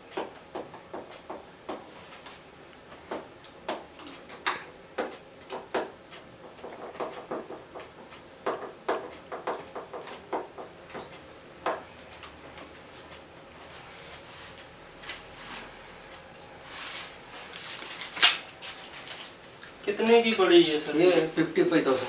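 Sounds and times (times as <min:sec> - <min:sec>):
hard objects clicking and knocking: 0:03.0 - 0:12.4.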